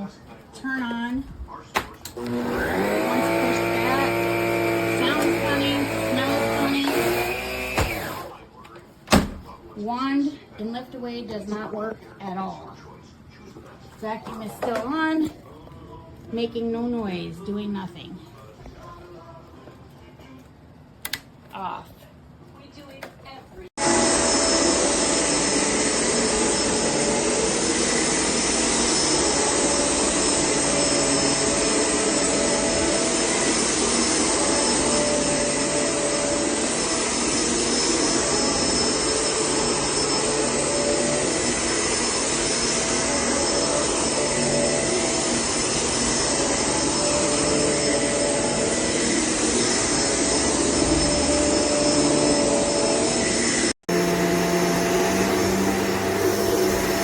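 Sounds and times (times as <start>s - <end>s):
upright vacuum cleaner running: 2.1s - 8.4s, 23.8s - 57.0s.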